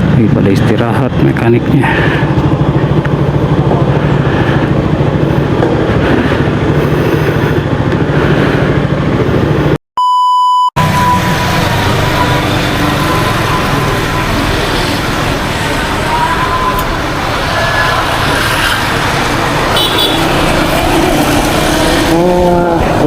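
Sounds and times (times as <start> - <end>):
engine and traffic rumble: 0.0 - 9.8, 10.8 - 23.0
high-pitched censor beep: 10.0 - 14.6.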